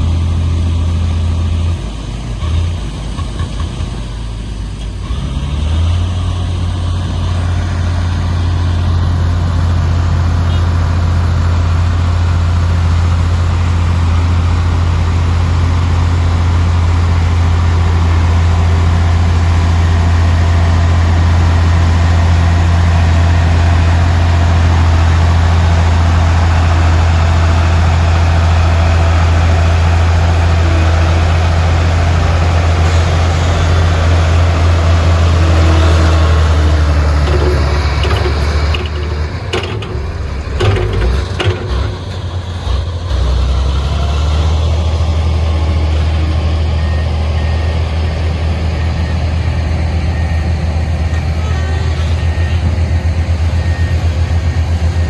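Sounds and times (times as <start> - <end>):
heavy diesel engine running: 0.0 - 55.0
short knocks: 36.9 - 42.1.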